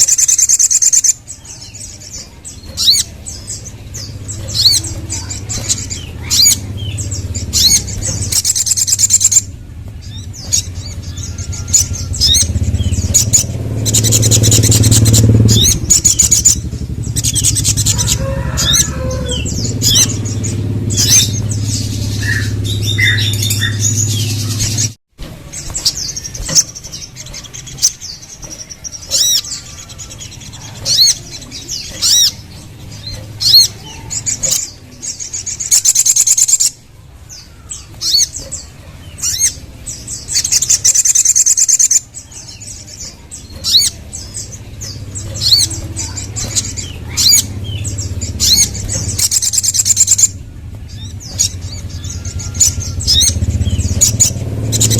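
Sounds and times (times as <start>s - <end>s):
bird chirping and trilling: 0.0s - 54.9s
low hum: 1.2s - 35.7s.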